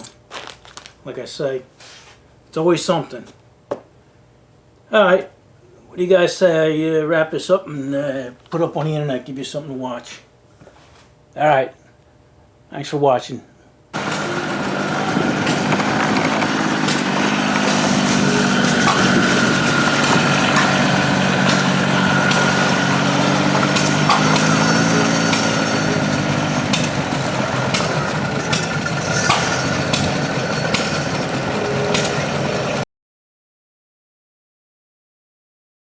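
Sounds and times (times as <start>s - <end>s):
engine idling: 14.0s - 32.8s
high whine: 14.0s - 32.8s.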